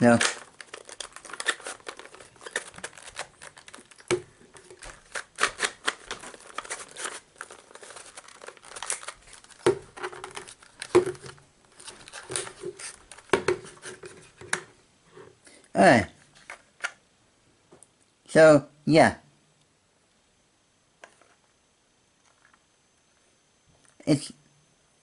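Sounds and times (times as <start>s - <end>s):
puzzle cube clicking and rattling: 0.0s - 14.0s.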